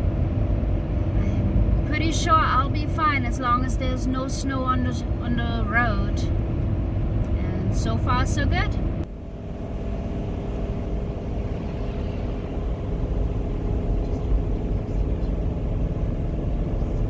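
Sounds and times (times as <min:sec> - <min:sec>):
road rumble: 0:00.0 - 0:17.0
vehicle engine drone: 0:00.0 - 0:17.0.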